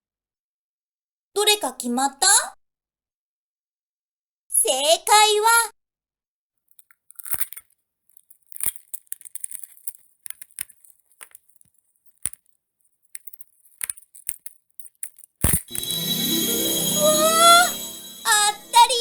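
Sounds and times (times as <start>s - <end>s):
eggshells cracking: 6.7s - 12.4s.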